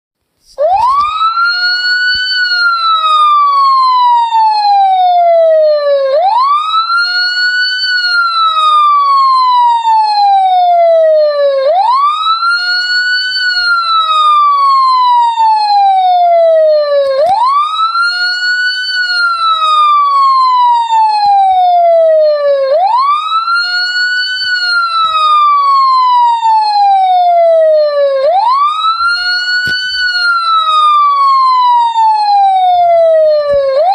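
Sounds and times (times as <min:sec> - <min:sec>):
police siren ringtone wailing: 0:00.6 - 0:33.9.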